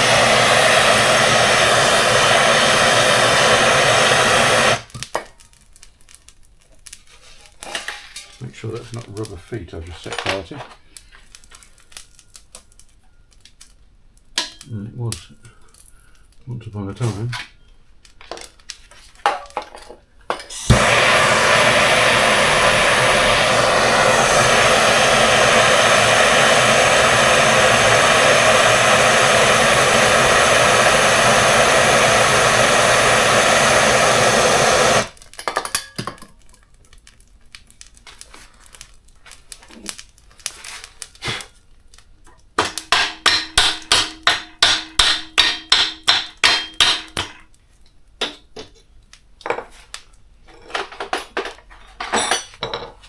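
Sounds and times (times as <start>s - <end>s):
power tool running: 0.0s - 4.9s, 20.5s - 35.2s.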